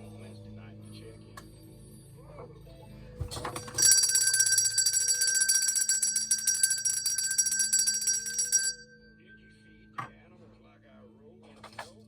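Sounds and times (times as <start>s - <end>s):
bell ringing rapidly: 3.2s - 9.2s.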